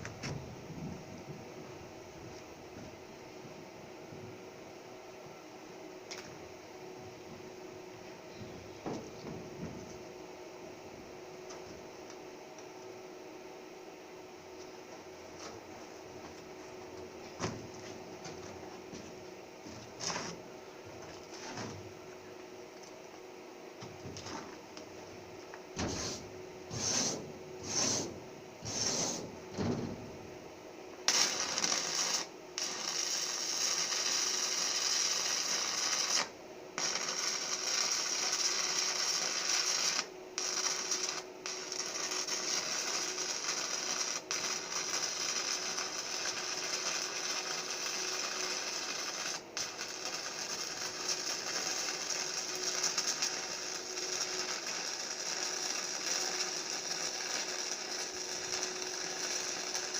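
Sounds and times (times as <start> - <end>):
welding arc crackling and hissing: 25.8 - 30.0, 31.0 - 59.9.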